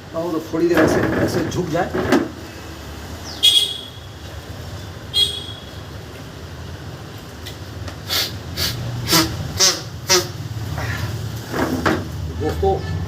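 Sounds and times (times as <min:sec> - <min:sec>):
low traffic rumble: 0:00.0 - 0:13.0
forceful nose blasts: 0:08.0 - 0:10.4.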